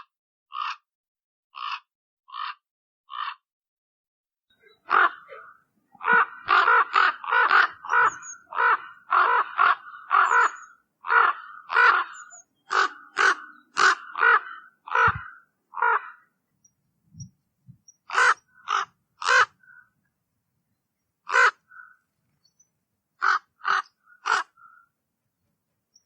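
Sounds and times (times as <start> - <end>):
raven cawing: 0.5 - 0.8, 1.6 - 3.4, 4.6 - 16.4, 18.1 - 20.0, 21.2 - 22.1, 23.2 - 25.0.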